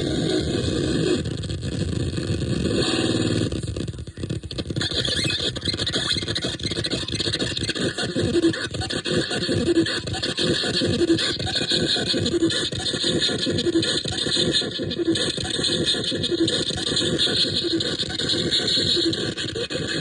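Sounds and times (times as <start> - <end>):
scraping squealing machine noise: 4.6 - 20.0.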